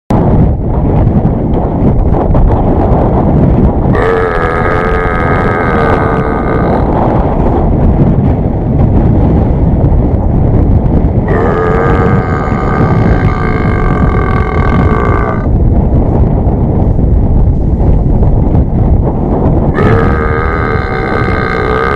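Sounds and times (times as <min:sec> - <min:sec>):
wind rumble on microphone: 0:00.1 - 0:21.9
long human burps: 0:03.9 - 0:06.9, 0:11.3 - 0:15.5, 0:19.8 - 0:21.9.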